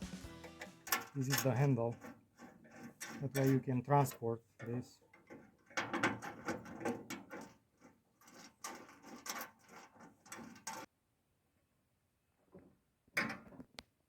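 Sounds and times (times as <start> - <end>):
metal parts clicking and scraping: 0.4 - 10.9.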